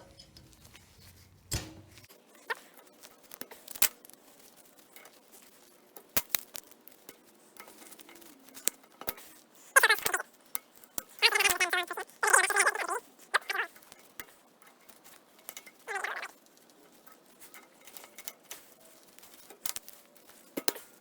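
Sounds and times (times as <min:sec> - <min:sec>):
squeaky metal scraping: 0:00.0 - 0:02.6
light metallic clicks and taps: 0:01.4 - 0:02.1.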